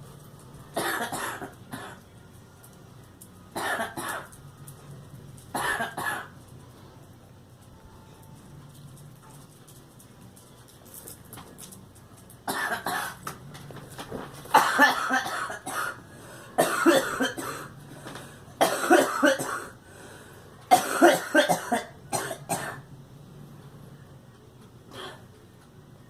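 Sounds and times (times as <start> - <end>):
girl coughing: 0.8 - 2.0, 3.6 - 4.2, 12.5 - 13.2, 14.6 - 16.0, 16.6 - 17.7, 18.6 - 19.7, 20.7 - 22.8.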